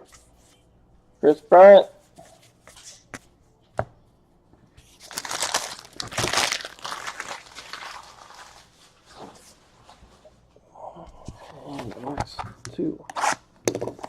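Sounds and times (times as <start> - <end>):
packaging crinkling and tearing: 5.0 - 8.7.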